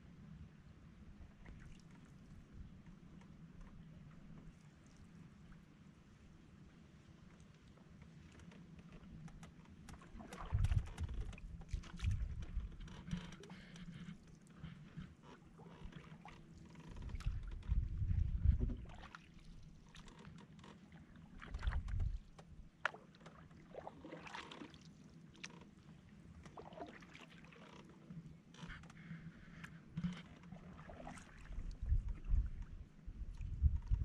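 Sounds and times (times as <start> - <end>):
paddle strokes in water: 1.2 - 34.0
small knocks and splashes: 8.2 - 13.6, 15.2 - 25.8, 26.4 - 28.0, 30.0 - 32.7.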